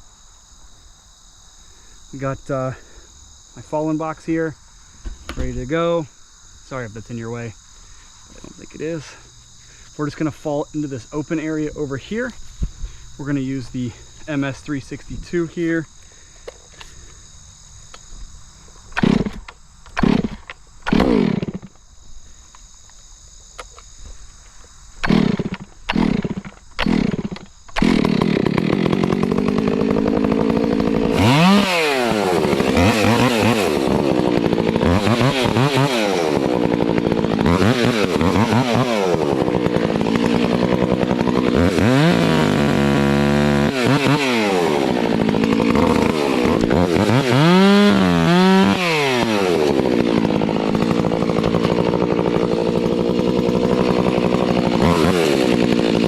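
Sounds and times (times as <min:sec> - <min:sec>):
crickets chirping: 0:00.0 - 0:55.2
chainsaw revving: 0:18.9 - 0:21.8, 0:25.0 - 0:56.0.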